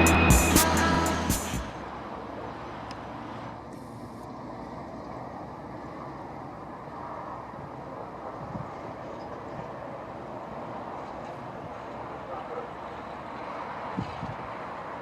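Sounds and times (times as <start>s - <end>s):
music: 0.0s - 1.8s
outdoor rumble and hiss: 0.0s - 15.0s.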